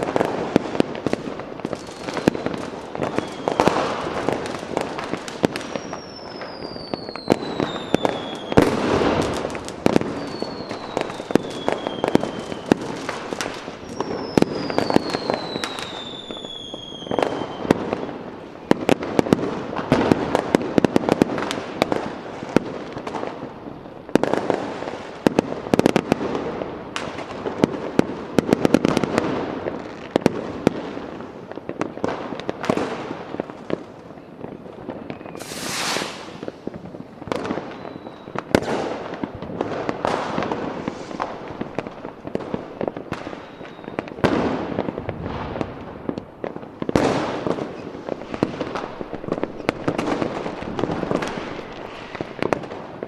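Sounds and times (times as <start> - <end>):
fireworks bangs and crackles: 0.0 - 53.0
firework whistles gliding down: 1.7 - 17.9, 34.9 - 38.7, 43.1 - 44.3.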